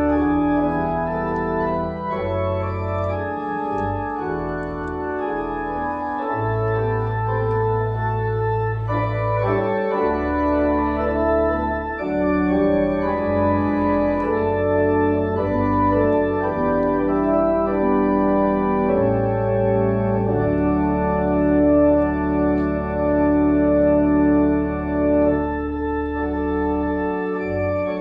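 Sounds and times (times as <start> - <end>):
church organ chords: 0.0 - 28.0.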